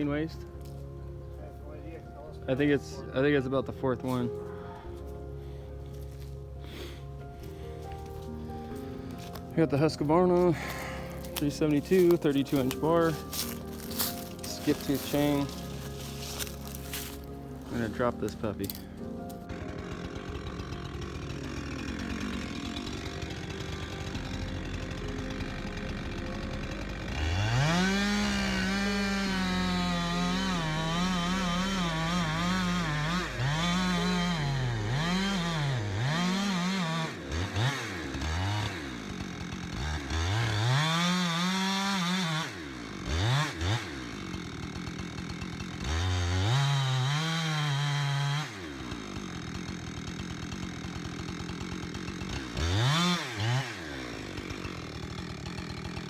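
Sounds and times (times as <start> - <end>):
chainsaw revving and idling: 0.0 - 56.0.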